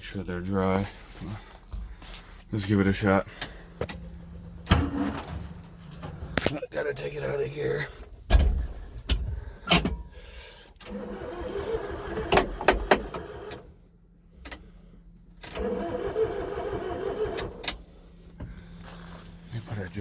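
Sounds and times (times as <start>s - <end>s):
starter cranking engine: 10.8s - 13.7s, 15.4s - 17.9s.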